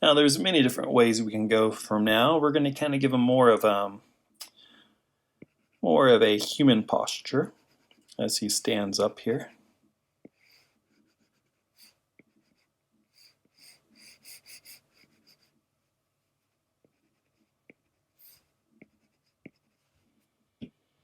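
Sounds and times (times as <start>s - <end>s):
pencil strokes on paper: 5.4s - 9.5s, 10.2s - 15.6s, 16.2s - 20.4s.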